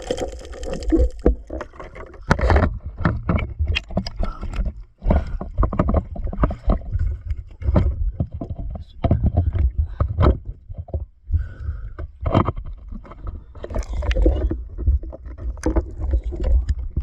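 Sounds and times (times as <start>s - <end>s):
water splashing: 0.0s - 2.0s
underwater clicks and knocks: 0.0s - 17.0s.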